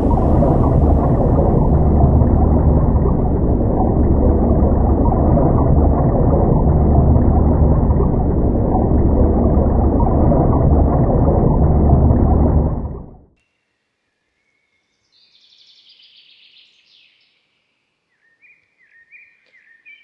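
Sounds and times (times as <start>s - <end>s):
low rumbling drone: 0.0s - 13.3s.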